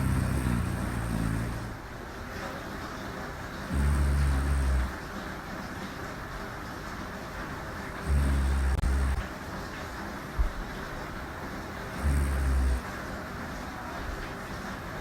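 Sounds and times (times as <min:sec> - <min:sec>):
woman snoring: 0:00.0 - 0:01.8, 0:03.7 - 0:05.0, 0:08.0 - 0:09.3, 0:11.9 - 0:12.8
steady background hiss: 0:00.0 - 0:15.0.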